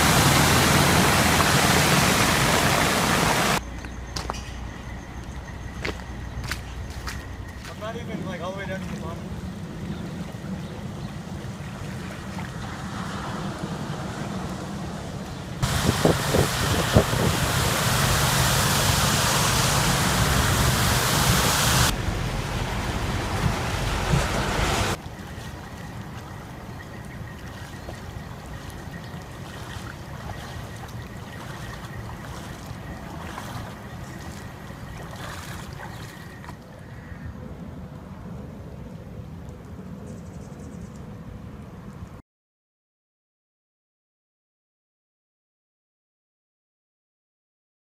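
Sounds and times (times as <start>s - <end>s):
floodwater rushing: 0.0s - 3.6s, 6.8s - 36.6s
wind rushing: 13.0s - 25.0s.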